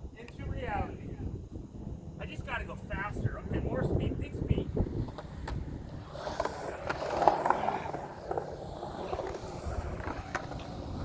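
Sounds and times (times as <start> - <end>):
skateboard wheels rolling on concrete: 0.0 - 11.0
skateboard grinding scrape: 4.6 - 11.0
skateboard clacks: 4.8 - 11.0.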